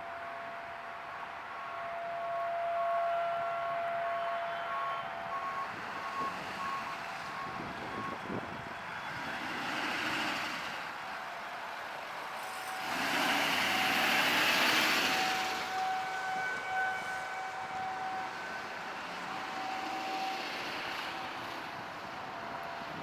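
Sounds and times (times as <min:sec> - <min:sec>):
tornado warning siren: 0:00.0 - 0:23.0
passing vehicle rush: 0:05.3 - 0:23.0.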